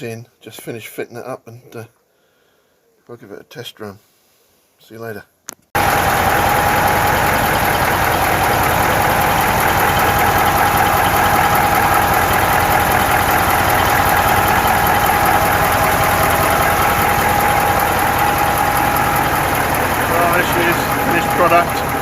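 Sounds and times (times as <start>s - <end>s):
diesel truck engine idling: 5.8s - 22.0s.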